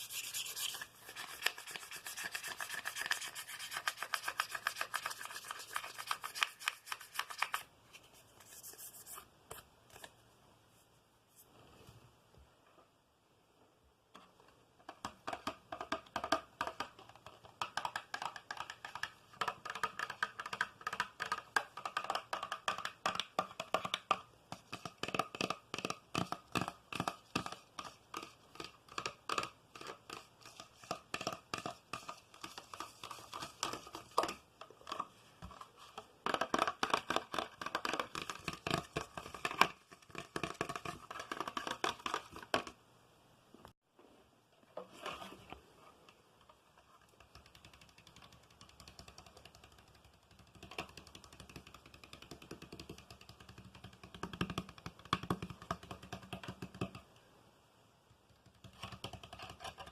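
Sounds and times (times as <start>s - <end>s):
fingers tapping crisply: 0.0s - 7.7s.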